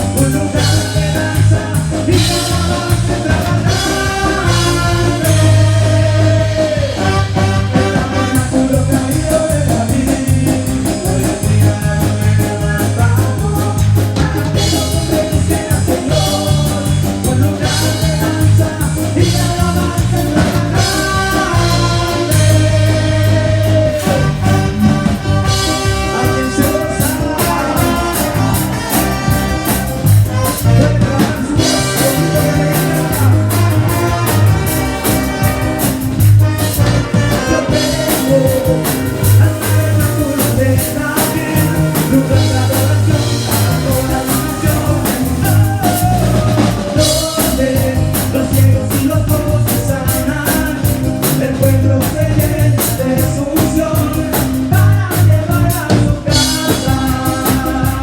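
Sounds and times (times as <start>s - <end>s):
drum kit beat: 0.0s - 58.0s
live worship band music: 0.0s - 58.0s
person singing: 0.0s - 58.0s.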